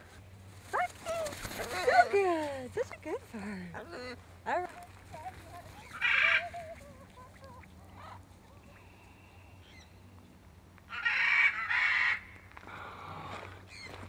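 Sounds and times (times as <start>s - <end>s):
macaw squawking harshly: 5.8s - 6.6s, 10.9s - 12.3s.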